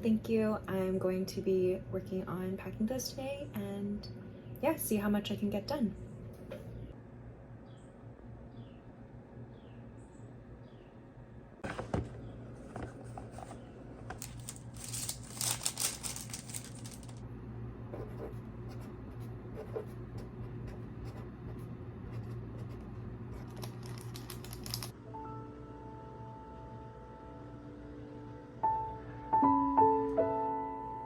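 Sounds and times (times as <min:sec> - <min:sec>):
packaging rustling and crinkling: 0:12.8 - 0:17.2, 0:23.6 - 0:24.9.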